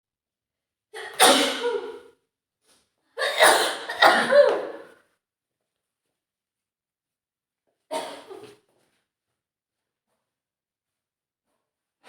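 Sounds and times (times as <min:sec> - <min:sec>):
woman sneezing: 0:01.0 - 0:02.1, 0:03.2 - 0:04.8.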